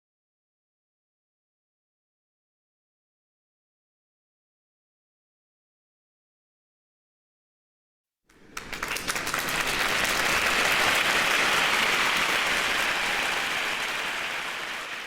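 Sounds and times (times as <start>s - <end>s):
crowd applauding: 8.3s - 15.0s.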